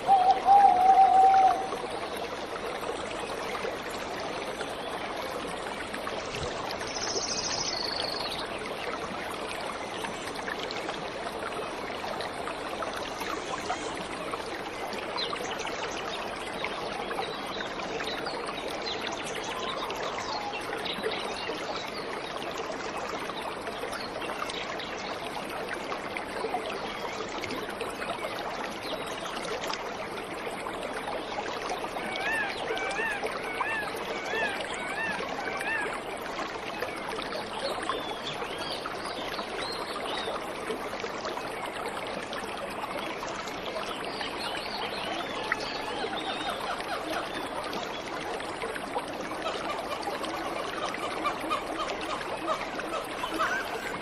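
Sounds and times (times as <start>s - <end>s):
faint bird calls: 0.0s - 1.8s, 32.0s - 36.0s, 51.0s - 54.0s
waterfall rushing: 53.1s - 54.0s.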